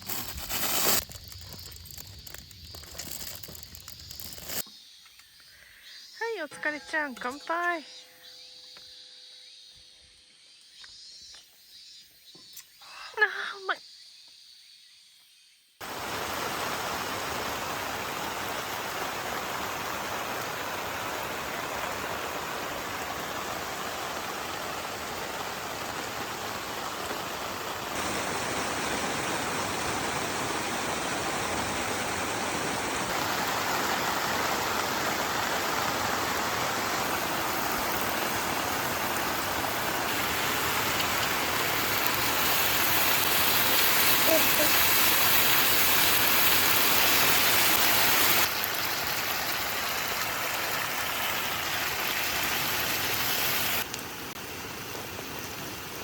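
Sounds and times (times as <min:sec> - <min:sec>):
heavy rain falling: 0:15.8 - 0:56.0.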